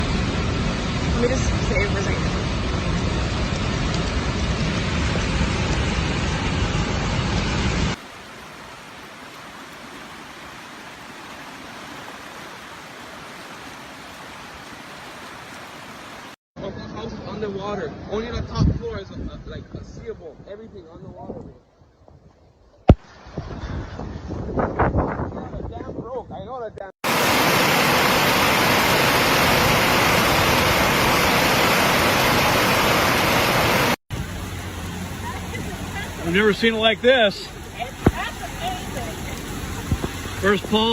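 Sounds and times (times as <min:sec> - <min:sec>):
floodwater rushing: 0:07.8 - 0:16.4, 0:27.0 - 0:40.9.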